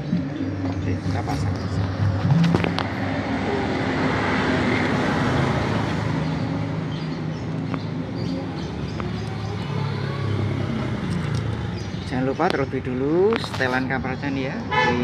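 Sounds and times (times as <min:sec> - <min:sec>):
engine and traffic hum: 0:00.0 - 0:15.0.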